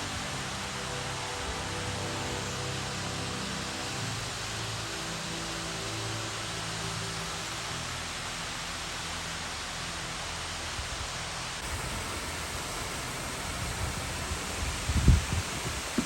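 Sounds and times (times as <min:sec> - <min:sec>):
water rushing: 0:00.0 - 0:16.0.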